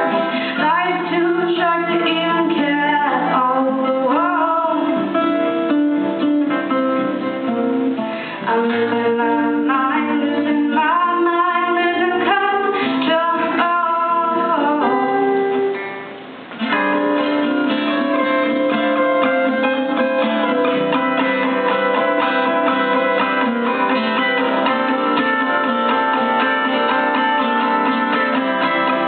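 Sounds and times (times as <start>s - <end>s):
woman singing: 0.0s - 5.6s, 8.4s - 15.8s
acoustic guitar strumming: 0.0s - 29.0s.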